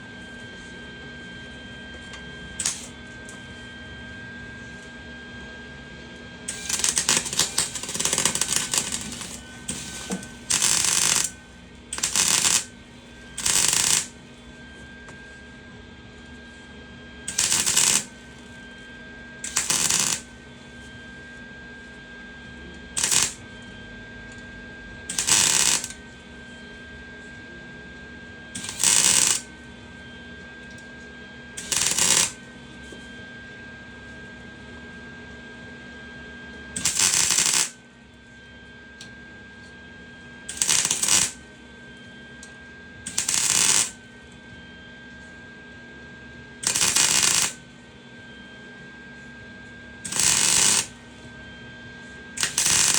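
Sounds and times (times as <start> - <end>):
faint hum: 0.0 - 4.9, 6.1 - 15.4, 17.3 - 18.6, 19.4 - 20.9, 22.6 - 26.8, 28.6 - 29.5, 31.6 - 32.5, 36.8 - 37.8, 40.5 - 41.5, 42.4 - 44.0, 46.6 - 47.6, 50.1 - 51.6
welding arc crackling: 2.6 - 2.9, 6.5 - 11.4, 12.0 - 12.7, 13.4 - 14.2, 17.3 - 18.2, 19.4 - 20.3, 23.0 - 23.4, 25.1 - 26.0, 28.6 - 29.5, 31.6 - 32.4, 36.8 - 37.8, 40.5 - 41.4, 43.1 - 44.0, 46.6 - 47.6, 50.1 - 51.0, 52.4 - 52.9.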